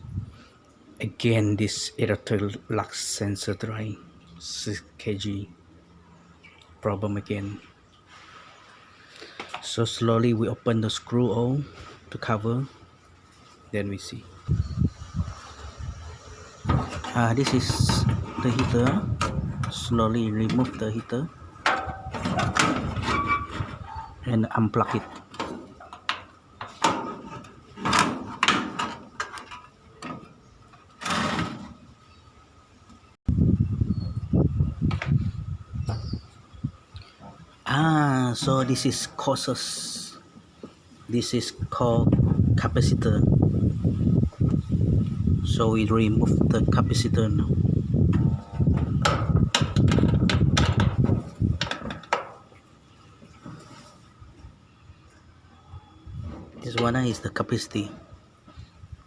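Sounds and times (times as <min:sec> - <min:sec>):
sharp clicks and knocks: 0:16.7 - 0:19.8, 0:24.9 - 0:31.7, 0:48.1 - 0:53.4.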